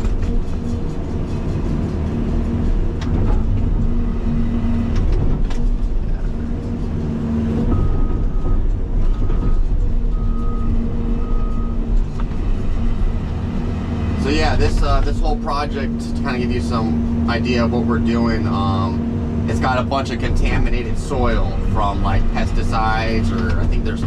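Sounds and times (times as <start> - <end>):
excavator diesel engine working: 0.0 - 24.0
high-pitched alarm beeps: 7.7 - 11.9.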